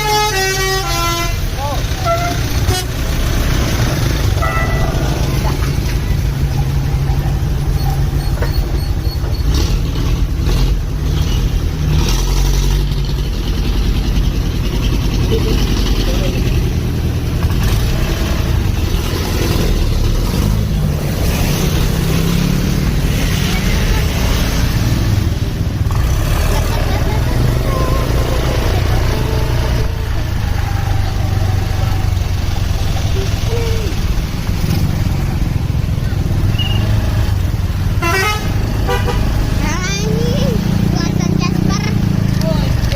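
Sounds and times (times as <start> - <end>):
bus diesel engine rumbling: 0.0 - 42.9.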